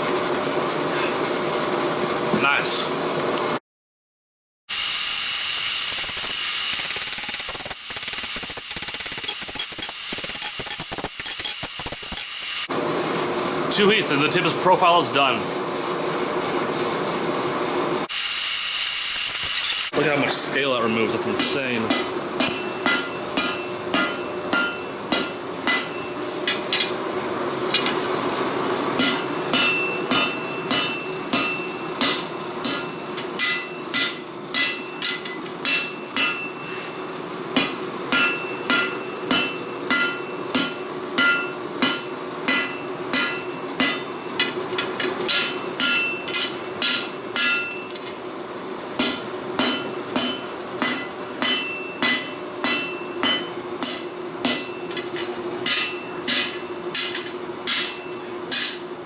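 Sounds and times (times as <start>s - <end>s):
hammer ringing on anvil: 21.4s - 26.2s, 29.0s - 36.7s, 37.6s - 44.2s, 45.3s - 48.0s, 49.0s - 58.9s.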